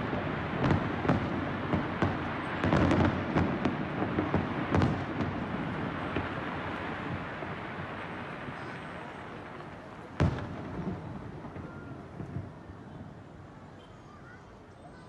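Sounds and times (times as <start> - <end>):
sharp firework bang: 0.0 - 6.4, 10.2 - 12.5
fireworks rumble: 0.0 - 13.8.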